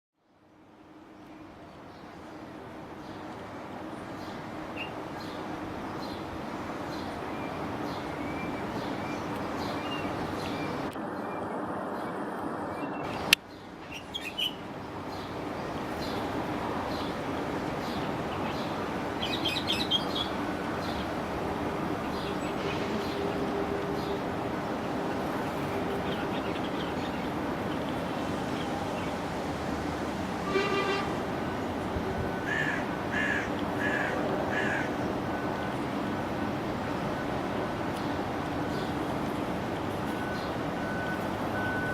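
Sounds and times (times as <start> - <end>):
rushing background noise: 0.6 - 41.9
bird calling: 32.3 - 35.1.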